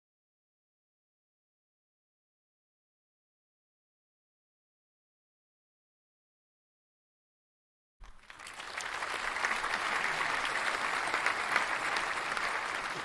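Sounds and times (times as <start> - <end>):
crowd applauding: 8.0 - 13.0.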